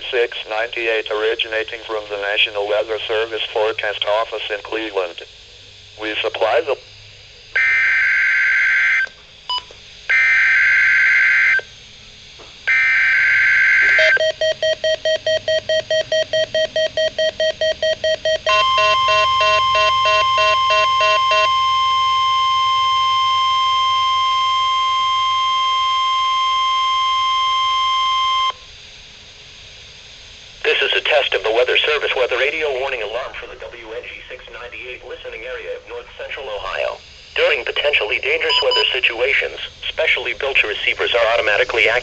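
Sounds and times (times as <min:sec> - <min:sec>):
steady warning alarm tone: 0:00.0 - 0:11.9, 0:12.6 - 0:28.7, 0:30.6 - 0:42.0
screeching digital data bursts: 0:07.5 - 0:09.2, 0:10.1 - 0:11.7, 0:12.7 - 0:28.7, 0:34.8 - 0:42.0
rapid beeping: 0:12.7 - 0:28.6, 0:37.3 - 0:42.0.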